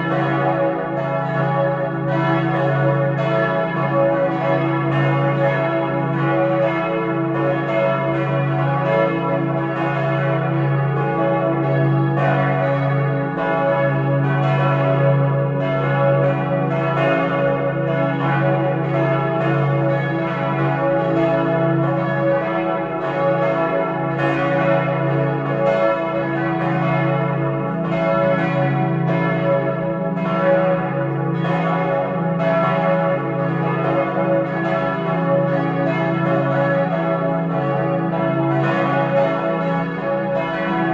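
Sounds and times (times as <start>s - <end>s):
church bells pealing: 0.0s - 40.9s.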